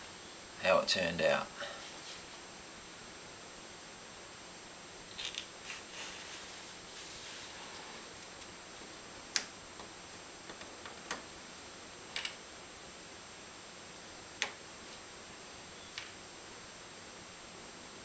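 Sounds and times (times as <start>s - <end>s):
faint steady hiss: 0.0s - 18.0s
small hard objects clicking: 5.1s - 5.5s.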